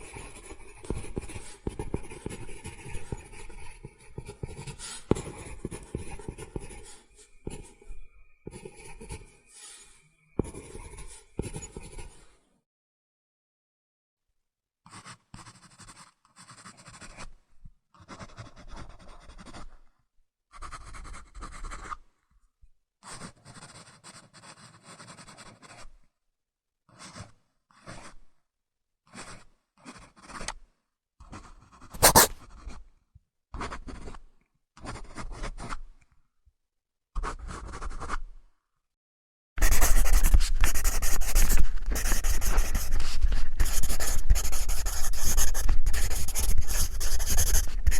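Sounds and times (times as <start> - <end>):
pencil scratching: 0.0 - 7.8, 8.5 - 12.3, 14.9 - 17.4, 18.0 - 19.8, 20.5 - 22.0, 23.0 - 26.0, 26.9 - 28.2, 29.1 - 30.6, 31.2 - 32.8, 33.6 - 34.2, 34.8 - 35.8, 37.2 - 38.2, 39.6 - 47.9.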